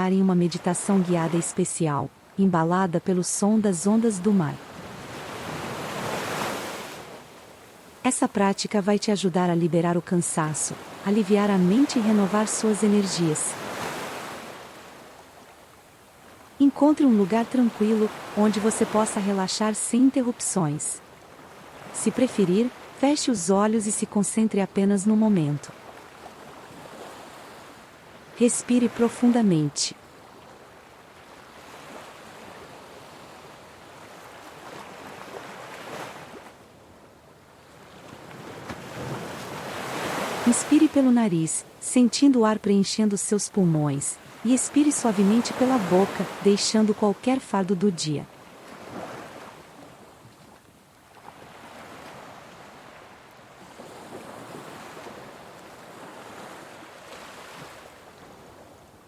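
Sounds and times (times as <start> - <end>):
ocean waves washing ashore: 0.0 - 59.0.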